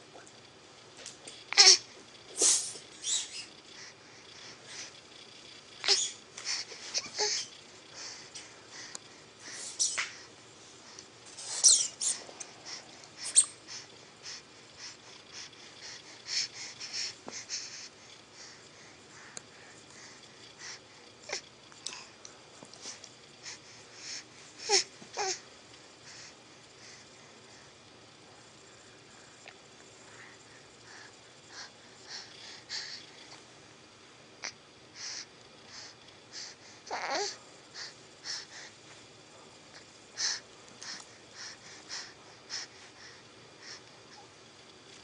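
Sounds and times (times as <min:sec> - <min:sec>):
falling squeak: 0:03.0 - 0:03.5, 0:11.5 - 0:12.2.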